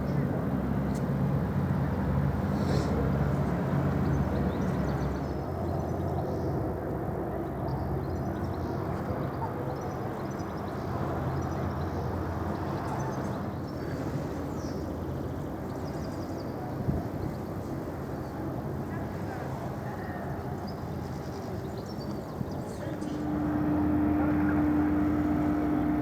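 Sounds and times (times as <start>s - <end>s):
ferry engines droning: 0.0s - 26.0s
broad rushing noise: 22.9s - 26.0s.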